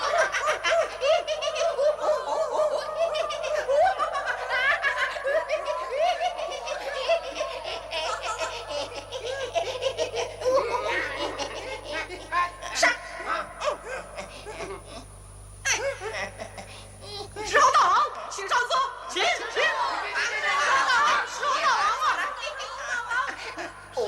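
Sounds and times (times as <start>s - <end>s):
monkeys chattering and squealing: 0.0s - 8.8s.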